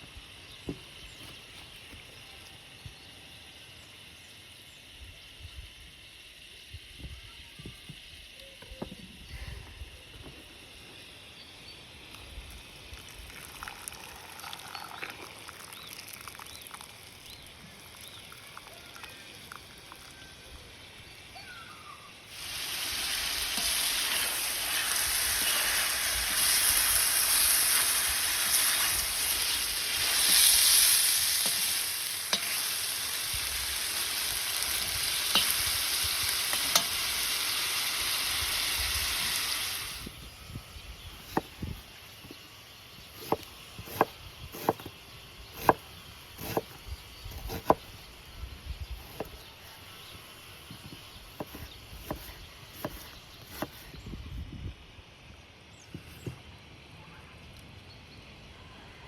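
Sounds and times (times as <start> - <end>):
food sizzling in hot fat: 11.0 - 48.3.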